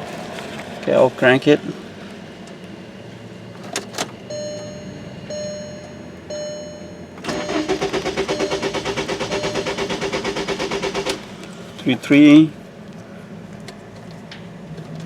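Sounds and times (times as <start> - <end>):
chime tones: 4.3 - 9.9
starter motor cranking: 7.2 - 11.3.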